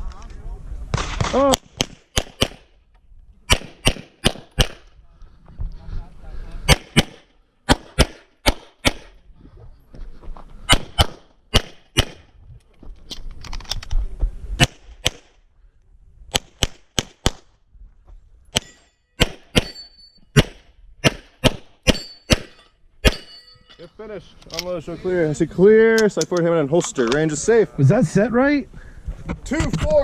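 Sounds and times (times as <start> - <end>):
pistol shots: 0.9 - 2.7, 3.5 - 4.9, 6.7 - 9.2, 10.7 - 12.3, 16.3 - 17.5, 18.5 - 23.4.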